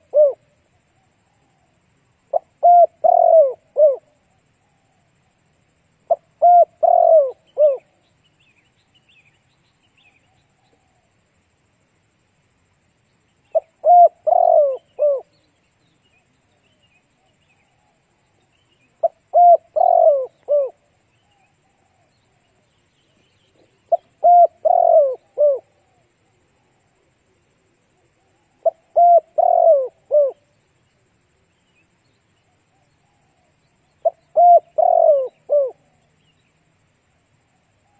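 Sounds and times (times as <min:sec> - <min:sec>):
dove cooing: 0:00.0 - 0:00.6, 0:02.3 - 0:04.2, 0:06.1 - 0:08.0, 0:13.5 - 0:15.4, 0:18.9 - 0:22.1, 0:23.5 - 0:26.1, 0:28.0 - 0:30.5, 0:34.0 - 0:36.1
small birds chirping: 0:13.0 - 0:25.7.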